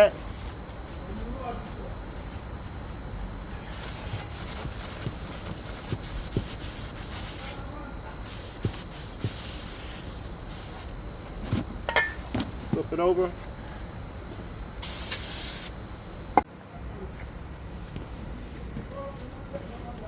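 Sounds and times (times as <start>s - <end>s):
paper towel rubbing metal: 2.0s - 11.6s.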